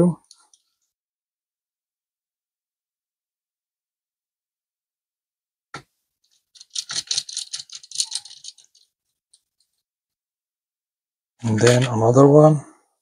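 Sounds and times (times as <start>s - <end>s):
small metal screws rattling: 6.5s - 9.5s.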